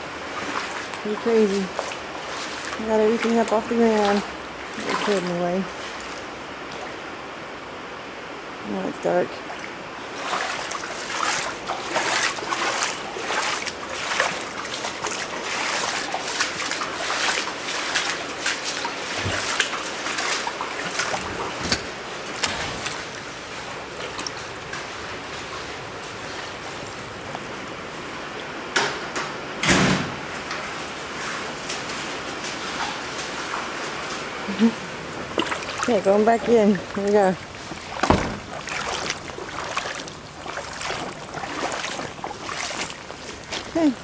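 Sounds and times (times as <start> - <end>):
footsteps wading through water: 0.0 - 7.3, 9.4 - 28.6, 30.6 - 44.0
sharp knocks: 38.0 - 38.5.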